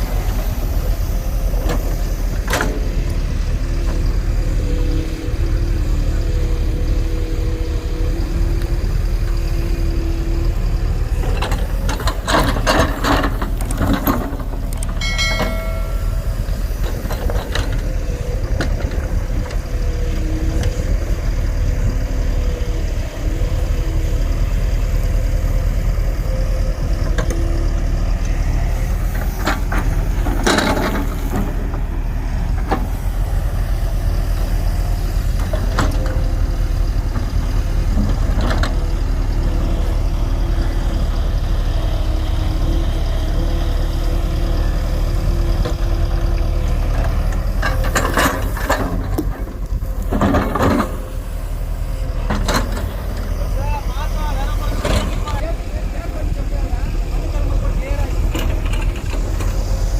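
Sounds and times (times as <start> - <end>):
heavy diesel engine running: 0.0 - 59.9
metallic clanking: 11.2 - 18.9.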